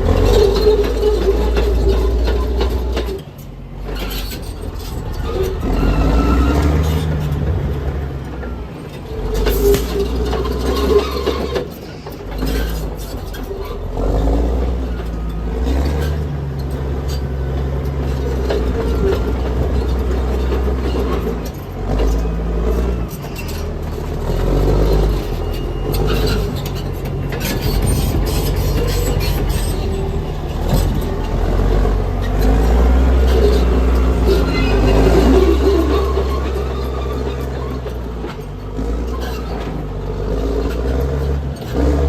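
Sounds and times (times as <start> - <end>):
diesel engine droning: 0.0 - 42.0
knocks and clatter: 15.0 - 41.8.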